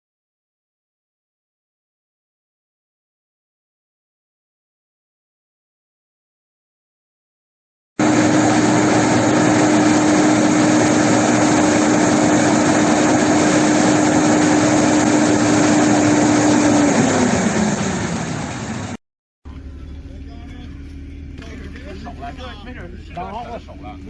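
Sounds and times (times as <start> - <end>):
harvester machine humming: 8.0 - 24.0.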